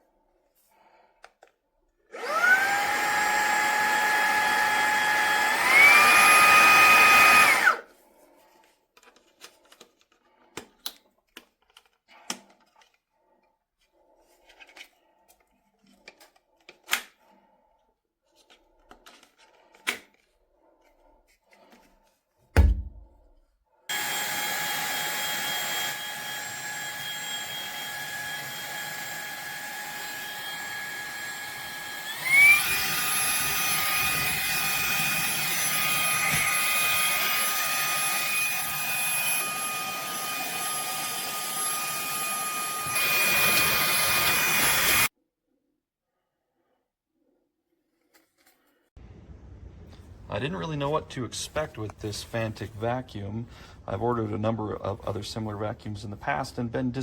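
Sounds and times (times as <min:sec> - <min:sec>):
handheld vacuum motor whining: 0:02.1 - 0:07.9, 0:23.9 - 0:45.1
low thump: 0:22.6 - 0:23.2.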